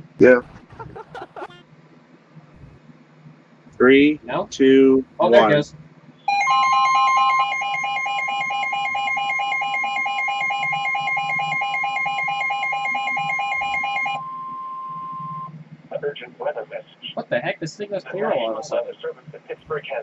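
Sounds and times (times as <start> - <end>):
steady high alarm tone: 6.3 - 15.5
rapid pulsing beeps: 6.3 - 15.6.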